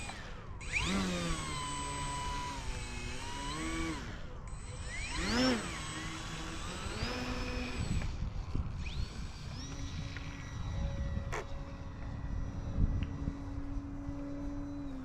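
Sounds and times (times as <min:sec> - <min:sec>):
model airplane motor whining: 0:00.0 - 0:15.0.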